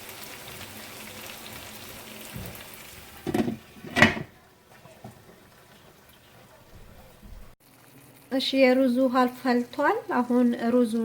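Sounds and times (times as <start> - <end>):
chicken sizzling in a pot: 0.0 - 6.5, 7.6 - 11.0
lid knocking on pot: 3.2 - 4.3.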